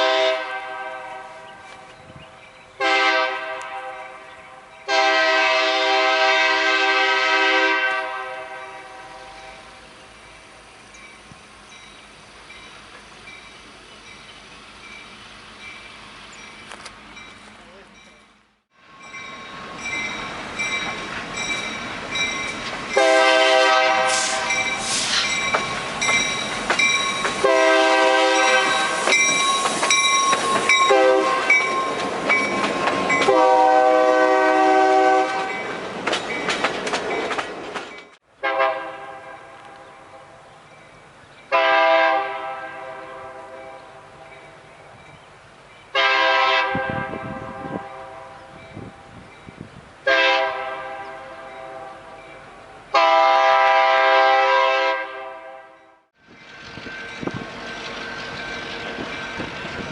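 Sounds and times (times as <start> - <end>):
locomotive horn: 0.0 - 1.8, 2.8 - 9.7, 23.0 - 24.6, 27.4 - 29.0, 30.9 - 31.7, 33.2 - 35.6, 38.4 - 40.3, 41.5 - 43.8, 45.9 - 48.5, 50.0 - 52.2, 52.9 - 56.0
train rumble and wheel clatter: 0.0 - 54.8, 56.1 - 59.9.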